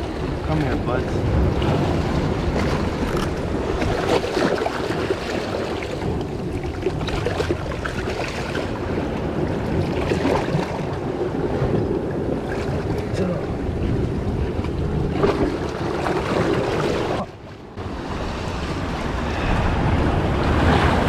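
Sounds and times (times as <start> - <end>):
wind buffeting microphone: 0.0 - 21.0
water splashing around rocks: 1.3 - 9.0.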